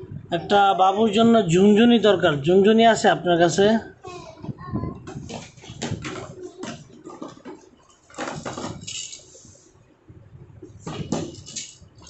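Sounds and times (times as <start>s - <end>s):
hard toys clinking and rattling: 5.1s - 9.6s, 10.8s - 12.0s.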